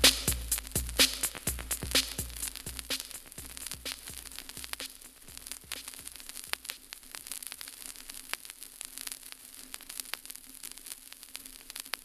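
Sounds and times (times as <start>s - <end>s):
faint hiss: 0.0s - 12.0s
vinyl clicks and pops: 2.6s - 10.4s.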